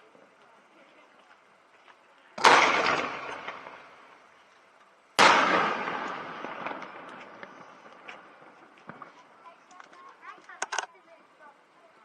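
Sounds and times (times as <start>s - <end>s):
firework bursts with echo: 2.4s - 4.3s, 5.2s - 9.4s.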